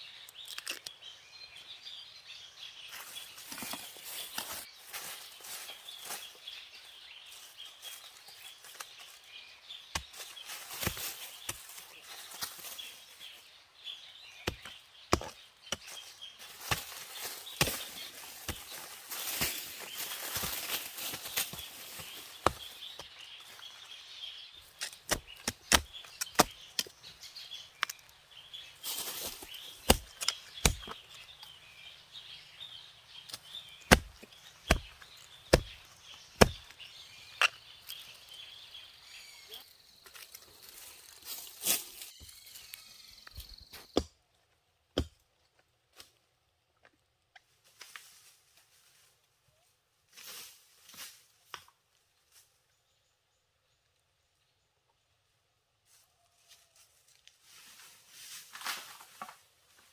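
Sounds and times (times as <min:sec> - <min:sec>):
blade chopping plant stalks: 0:09.9 - 0:12.9, 0:14.2 - 0:23.1, 0:24.6 - 0:27.0, 0:28.8 - 0:31.2, 0:33.3 - 0:38.0.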